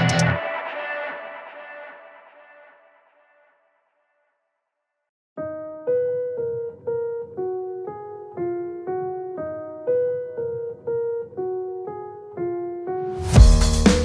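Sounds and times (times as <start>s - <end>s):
piano-like keyboard melody: 5.4s - 14.0s.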